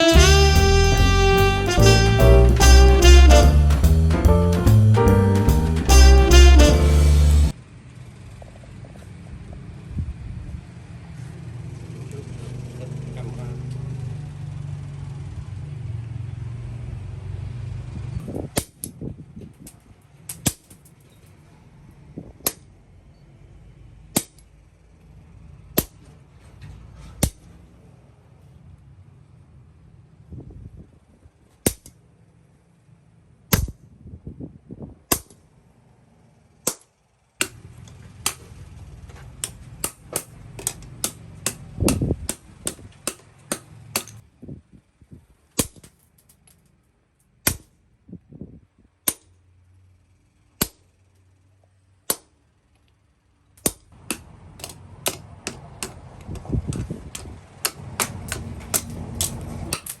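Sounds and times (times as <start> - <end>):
hammer striking steel on anvil: 38.2 - 38.6, 39.4 - 44.2, 53.6 - 56.0, 56.7 - 60.0.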